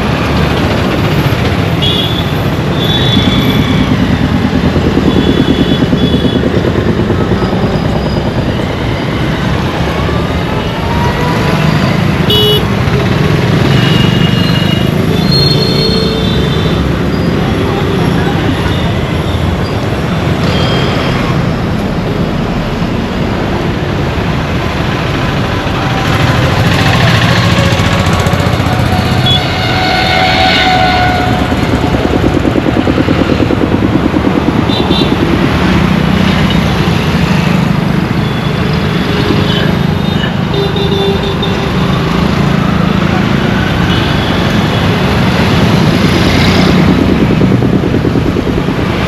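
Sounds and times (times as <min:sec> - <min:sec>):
motorcycles passing: 0:00.0 - 0:49.0
road traffic: 0:00.0 - 0:49.0
rhythmic engine pulse: 0:02.6 - 0:10.6, 0:30.6 - 0:39.9, 0:41.7 - 0:49.0.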